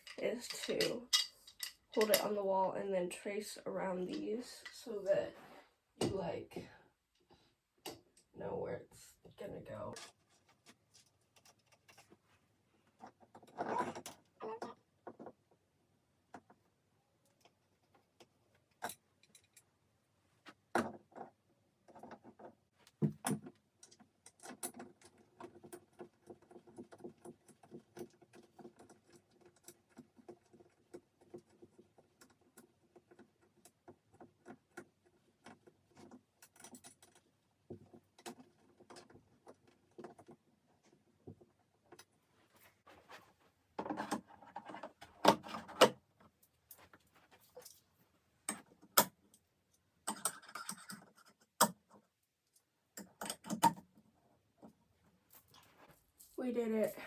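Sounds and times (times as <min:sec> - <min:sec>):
metal hooks rattling: 0:00.0 - 0:02.4.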